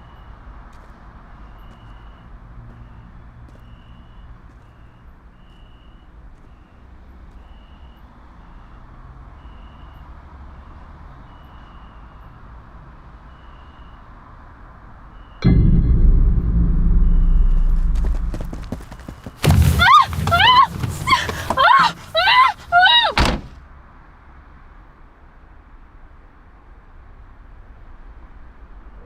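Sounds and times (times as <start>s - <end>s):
steady low rumble: 15.4s - 19.9s.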